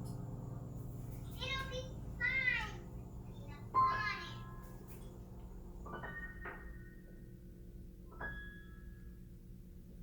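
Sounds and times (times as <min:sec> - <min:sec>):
soft piano notes: 0:03.6 - 0:10.0.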